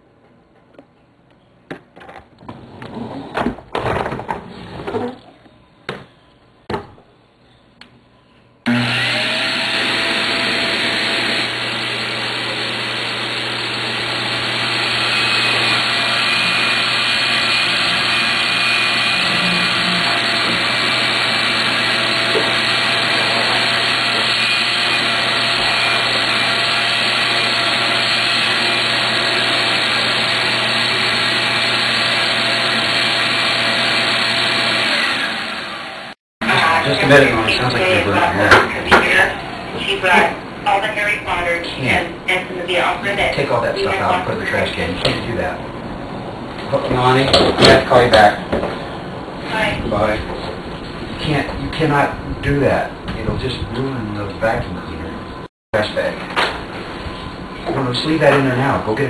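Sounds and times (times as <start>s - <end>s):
vacuum cleaner running: 8.7s - 45.6s.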